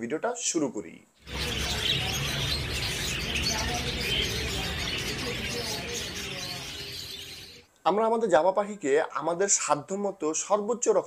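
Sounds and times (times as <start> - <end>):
small birds chirping: 1.2 - 7.7.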